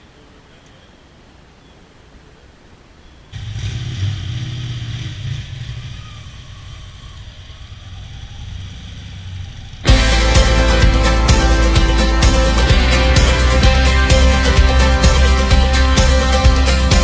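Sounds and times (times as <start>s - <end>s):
motorcycle engine revving: 3.4s - 17.0s
loud music: 9.9s - 17.0s.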